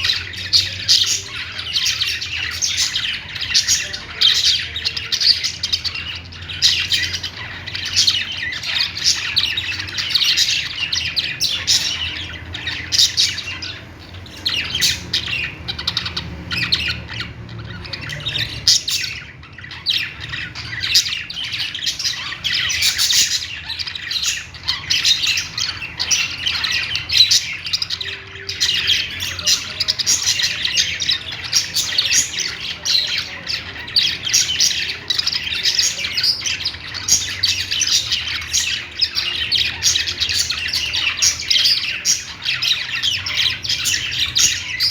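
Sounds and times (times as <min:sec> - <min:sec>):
budgerigars chirping: 0:00.0 - 0:44.9.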